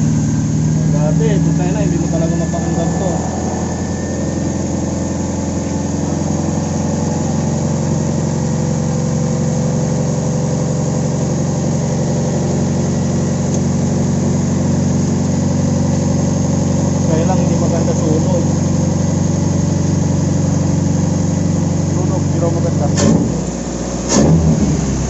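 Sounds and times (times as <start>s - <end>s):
car engine idling: 0.0s - 25.0s
man talking: 0.9s - 3.4s, 22.0s - 23.4s.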